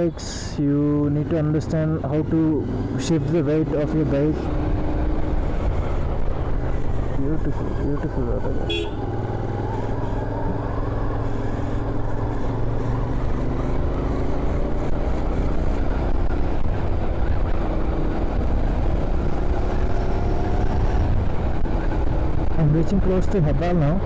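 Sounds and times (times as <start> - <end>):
motorcycle engine rumbling: 0.0 - 24.0
wind noise: 8.7 - 24.0.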